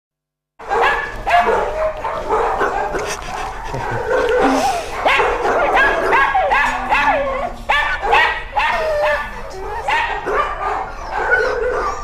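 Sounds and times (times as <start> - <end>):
dog yipping and whining: 4.1 - 12.0.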